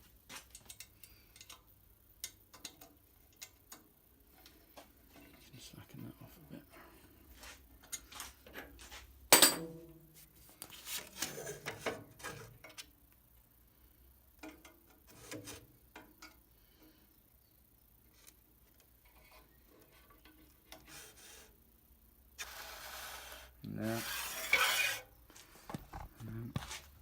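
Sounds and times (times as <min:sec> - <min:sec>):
metal tools being handled: 0:09.3 - 0:09.7
metallic clank with ring: 0:09.3 - 0:09.9.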